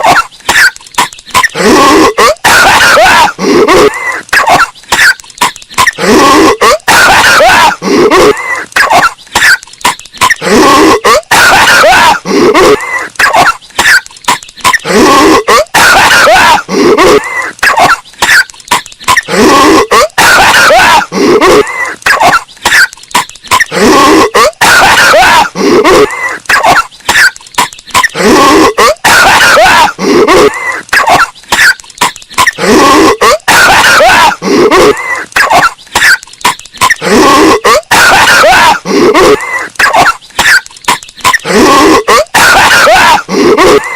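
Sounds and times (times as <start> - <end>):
distorted cartoon coughing: 0.0 - 43.9.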